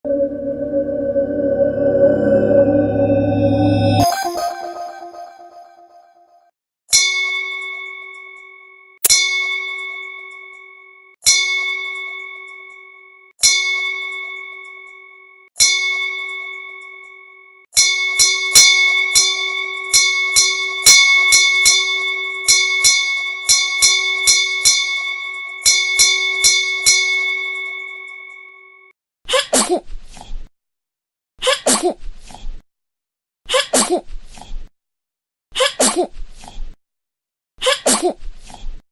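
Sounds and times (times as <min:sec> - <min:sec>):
bell ringing: 0:00.1 - 0:06.0
baby sneezing: 0:29.3 - 0:29.9, 0:31.4 - 0:32.1, 0:33.5 - 0:34.1, 0:35.6 - 0:36.2, 0:37.6 - 0:38.3.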